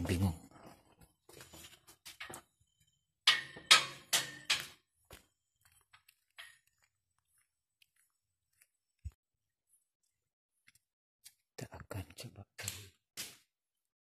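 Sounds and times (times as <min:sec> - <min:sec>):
sharp ringing knocks: 0:03.2 - 0:04.8.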